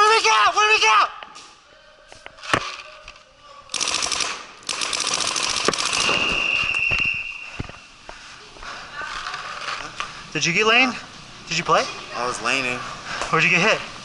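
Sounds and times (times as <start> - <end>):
paintball markers firing: 3.7 - 6.4.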